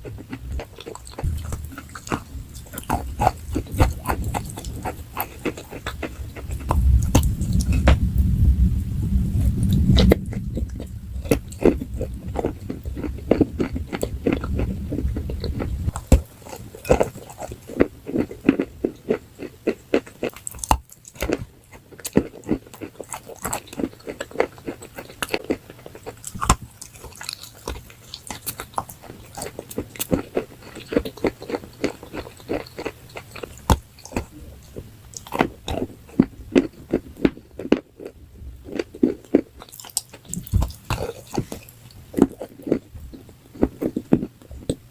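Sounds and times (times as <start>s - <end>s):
low hum: 0.0s - 18.0s
person chewing crunchy food: 0.0s - 44.9s.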